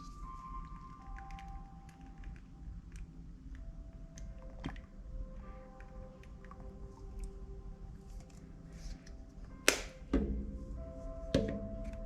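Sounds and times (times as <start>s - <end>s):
background music: 0.0s - 12.0s
slime clicking and popping: 9.7s - 10.0s.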